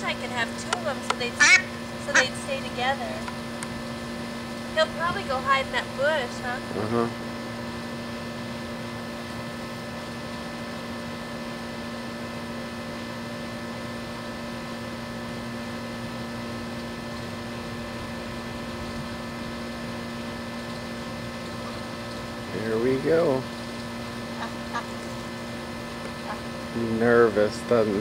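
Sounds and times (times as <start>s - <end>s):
motor humming: 0.0s - 28.0s.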